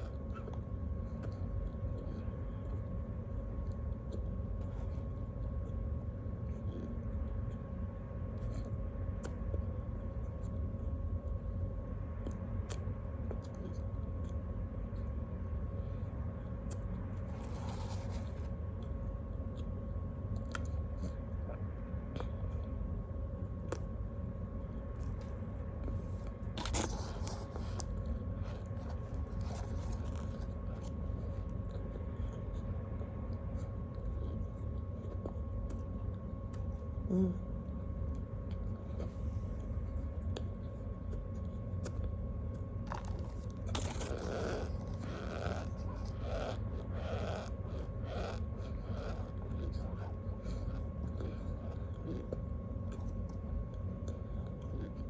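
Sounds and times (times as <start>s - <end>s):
low rumble and hum: 0.0s - 55.0s
person chewing crunchy snack: 12.2s - 22.8s, 23.4s - 36.9s, 38.0s - 55.0s.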